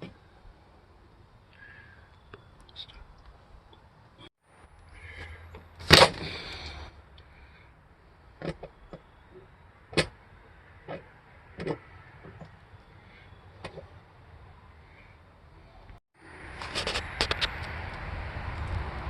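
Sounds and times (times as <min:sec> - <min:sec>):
rattling or scraping: 0:16.5 - 0:17.7.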